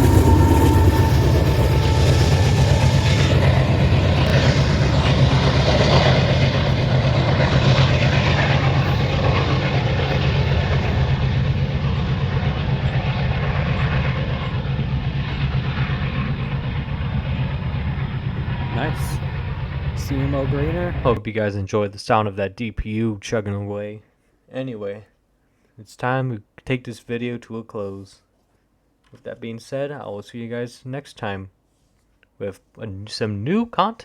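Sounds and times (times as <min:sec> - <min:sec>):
diesel locomotive engine chugging: 0:00.0 - 0:21.2.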